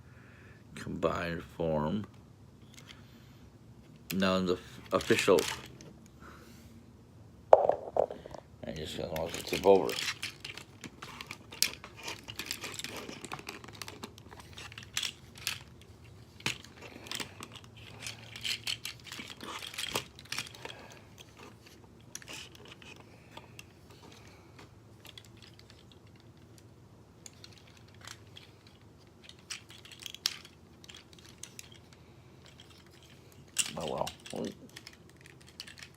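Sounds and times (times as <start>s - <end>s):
plastic toy parts clicking: 9.1s - 24.2s, 25.0s - 35.9s.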